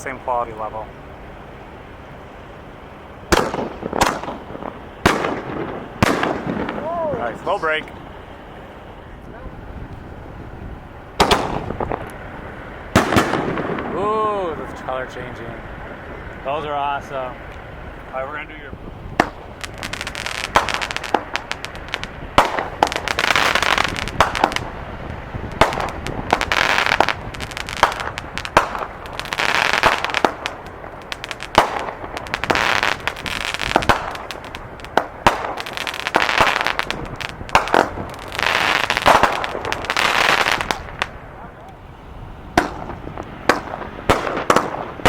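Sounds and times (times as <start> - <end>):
firework crackling: 0.0 - 45.0
firework shells banging: 3.3 - 8.8, 11.1 - 16.5, 17.3 - 41.9, 42.5 - 45.0.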